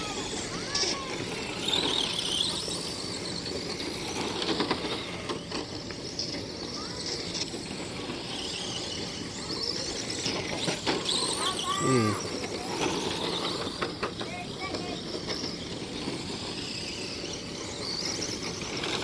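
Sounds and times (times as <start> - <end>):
radio-controlled car motors: 0.0 - 19.0
tyre squeals: 8.2 - 19.0.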